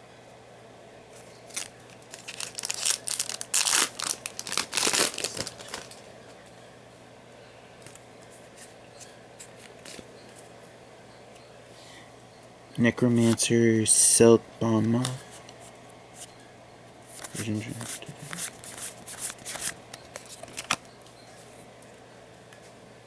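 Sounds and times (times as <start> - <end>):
cards being handled: 1.2 - 6.1, 13.2 - 13.4, 17.1 - 20.8
foil wrapper tearing and crinkling: 1.5 - 6.1.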